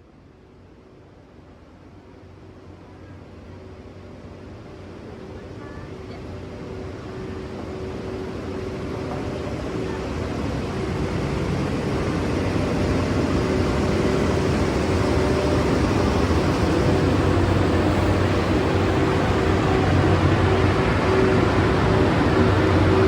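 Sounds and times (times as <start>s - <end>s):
train rumbling along track: 1.4s - 23.0s.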